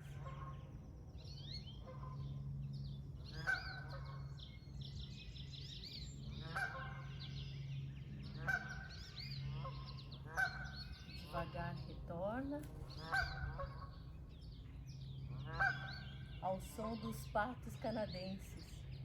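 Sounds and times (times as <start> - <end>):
geese honking: 0.0 - 0.7, 1.8 - 2.4, 3.3 - 4.4, 6.3 - 7.3, 8.3 - 14.1, 15.3 - 17.4
steady low hum: 0.0 - 19.0.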